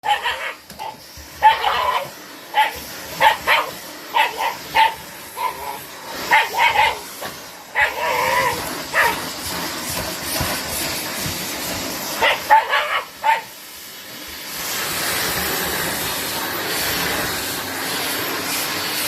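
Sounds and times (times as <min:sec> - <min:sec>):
dog bark-howl: 0:00.0 - 0:07.0, 0:07.7 - 0:09.2, 0:12.2 - 0:13.5
dog barking: 0:00.0 - 0:07.0, 0:07.7 - 0:09.2, 0:12.2 - 0:13.5.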